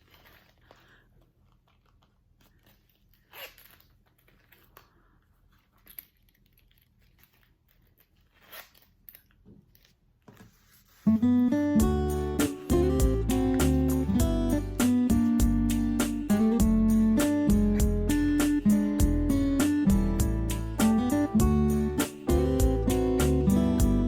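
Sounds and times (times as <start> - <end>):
handling rustles: 0.0 - 11.3
acoustic guitar music: 11.1 - 24.0.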